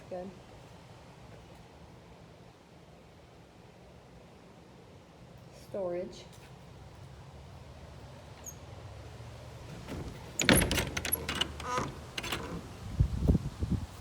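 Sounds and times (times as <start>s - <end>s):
shed door rattling and scraping: 9.5s - 13.2s
door squeak: 9.7s - 12.9s.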